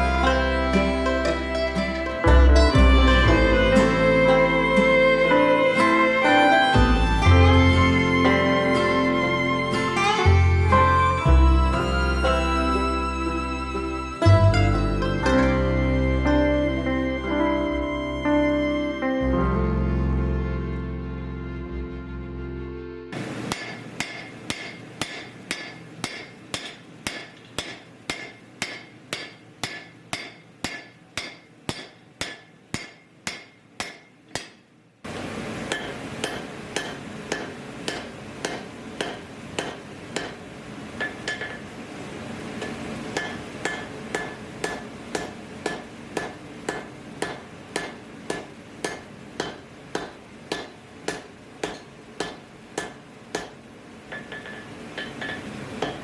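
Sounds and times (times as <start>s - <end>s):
hammer striking steel on anvil: 23.4s - 34.7s, 35.7s - 41.8s, 42.6s - 56.0s.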